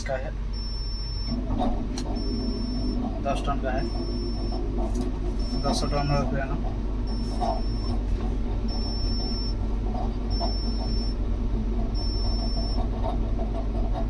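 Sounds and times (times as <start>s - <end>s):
low hum: 0.0s - 14.0s
high electronic warning beeps: 0.5s - 1.4s, 2.1s - 8.0s, 8.6s - 9.6s, 10.3s - 11.2s, 12.0s - 12.9s.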